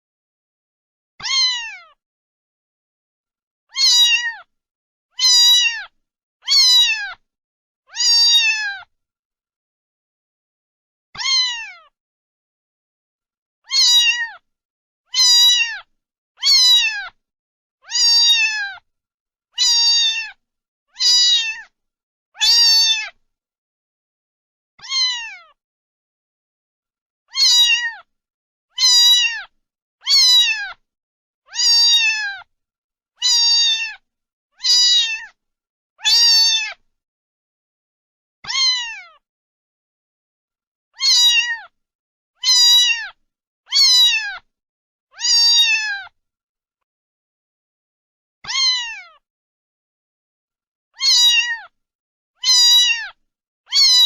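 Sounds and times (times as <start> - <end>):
cat meowing: 1.2 - 2.0, 3.7 - 4.5, 5.2 - 7.2, 7.9 - 8.9, 11.2 - 12.0, 13.6 - 14.4, 15.1 - 17.2, 17.8 - 18.8, 19.6 - 21.7, 22.4 - 23.2, 24.8 - 25.6, 27.3 - 28.1, 28.7 - 30.8, 31.5 - 32.5, 33.2 - 34.0, 34.6 - 35.4, 36.0 - 36.8, 38.4 - 39.2, 41.0 - 41.8, 42.4 - 44.5, 45.1 - 46.2, 48.4 - 49.2, 51.0 - 51.8, 52.4 - 54.0.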